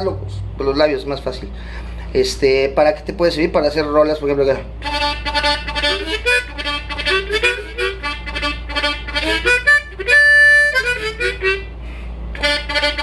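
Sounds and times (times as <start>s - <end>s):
harmonica playing fast flutter-tongued riff: 4.8s - 13.0s.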